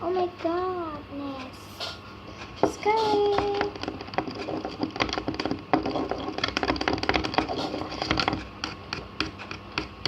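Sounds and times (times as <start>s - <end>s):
stirring wet slime: 2.7s - 10.0s.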